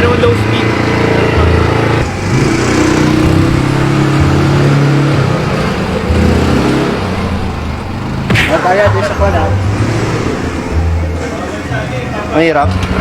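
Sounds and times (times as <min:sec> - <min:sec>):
atv engine running: 0:00.0 - 0:13.0.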